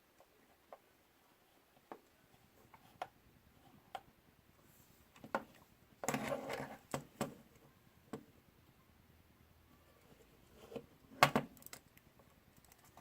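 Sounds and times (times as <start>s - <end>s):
small parts clicking and tapping: 11.2s - 13.0s.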